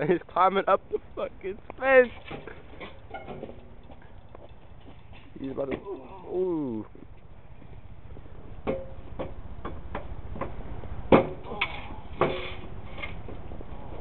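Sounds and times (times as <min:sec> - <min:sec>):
sharp knocks and clanks: 0:08.6 - 0:13.4.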